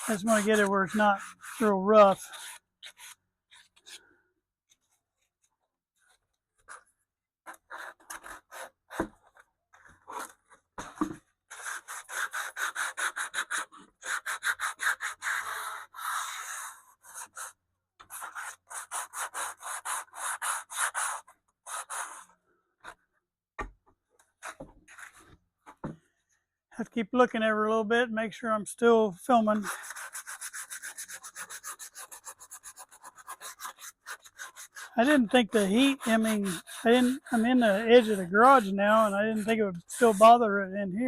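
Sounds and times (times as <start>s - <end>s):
sandpaper rubbing on wood: 0.0s - 4.0s, 11.5s - 22.3s, 29.5s - 40.4s.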